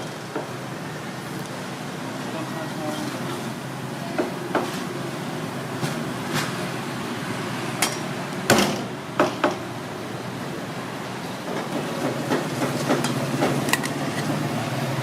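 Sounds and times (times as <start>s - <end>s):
street noise hum: 0.0s - 15.0s.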